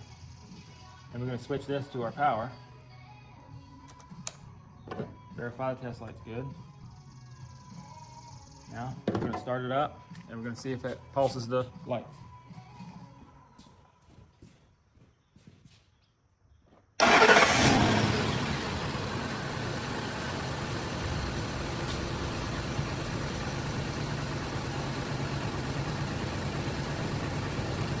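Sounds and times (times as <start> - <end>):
engine starting and idling: 17.0 - 28.0.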